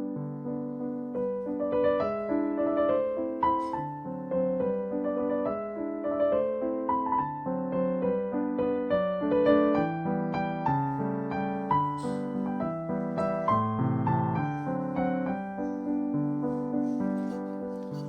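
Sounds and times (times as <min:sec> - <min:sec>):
gentle piano melody: 0:00.0 - 0:18.0.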